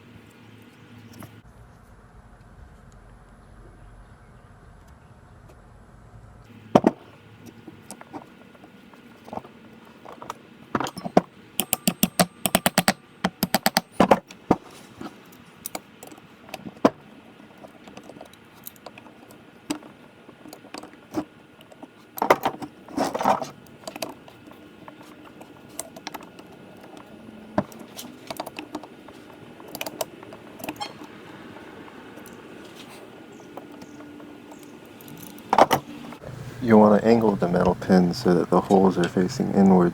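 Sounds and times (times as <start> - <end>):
metal brake parts clinking: 9.2 - 16.2, 22.2 - 36.2.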